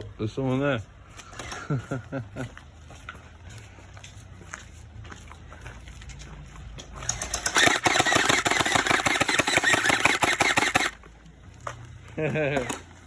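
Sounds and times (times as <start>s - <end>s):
gel blaster firing full auto: 7.1s - 11.0s.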